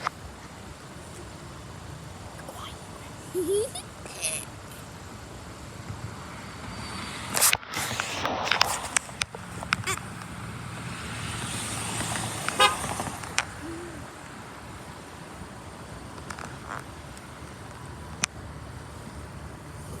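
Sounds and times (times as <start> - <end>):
car tyres hissing past: 0.0 - 20.0
low car horn toot: 12.6 - 13.0.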